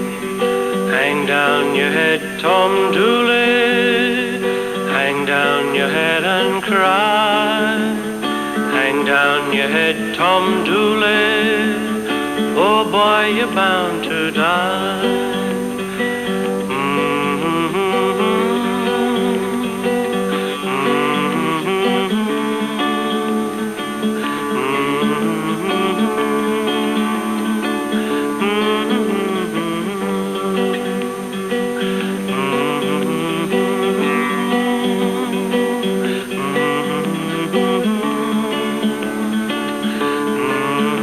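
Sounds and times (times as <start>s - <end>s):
acoustic guitar folk tune: 0.0s - 41.0s.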